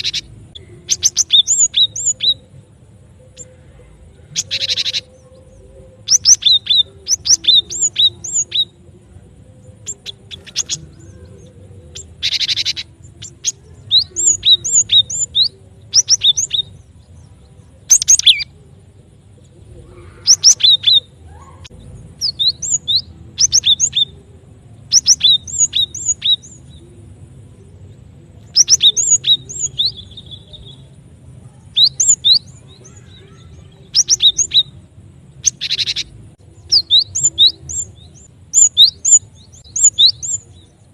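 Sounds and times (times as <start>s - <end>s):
high whistled bird song: 0.0s - 3.6s, 4.2s - 27.7s, 28.4s - 40.9s.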